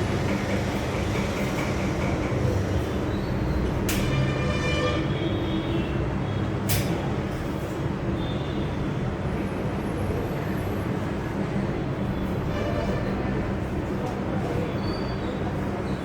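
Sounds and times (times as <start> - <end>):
low mechanical hum: 0.0 - 5.8.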